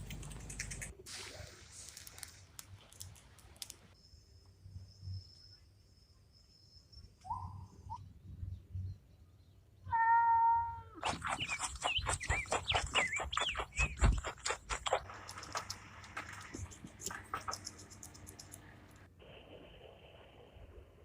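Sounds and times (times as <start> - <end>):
rapid clicks: 0.0 - 1.0, 11.0 - 19.1
cat meowing: 9.9 - 11.0
high curving squeaks: 11.0 - 15.1.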